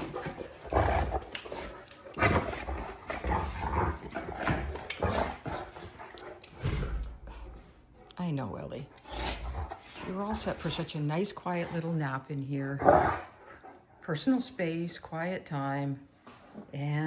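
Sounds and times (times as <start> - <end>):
dogs growling: 0.0 - 8.2, 8.8 - 14.0.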